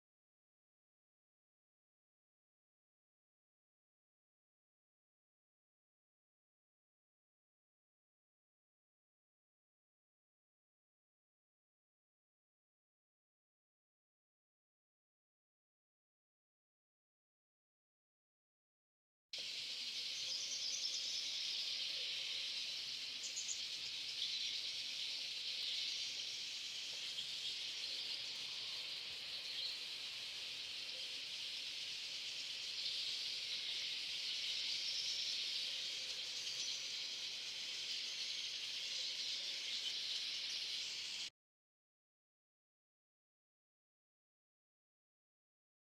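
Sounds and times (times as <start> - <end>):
fluttering high hiss: 19.4 - 41.3.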